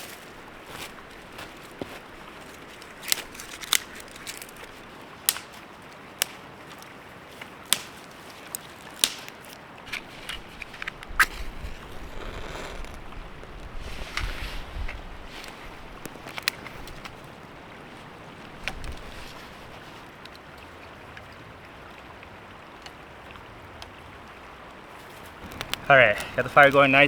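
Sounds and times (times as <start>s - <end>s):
dry wood snapping: 2.4s - 6.8s, 7.6s - 19.6s, 25.4s - 27.0s
wind rumble on microphone: 10.0s - 20.0s.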